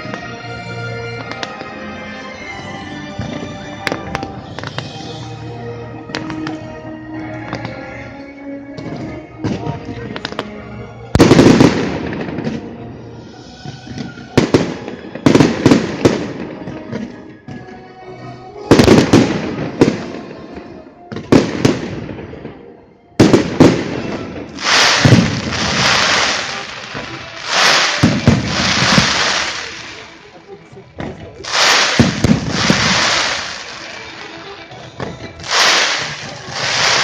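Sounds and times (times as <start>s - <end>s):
fireworks crackling hiss: 4.0s - 5.5s, 23.2s - 30.5s, 31.4s - 37.0s
fireworks bangs with echo: 11.2s - 12.8s, 13.8s - 17.1s, 18.7s - 20.4s, 21.1s - 22.6s, 23.2s - 30.1s, 31.4s - 34.5s, 35.4s - 37.0s.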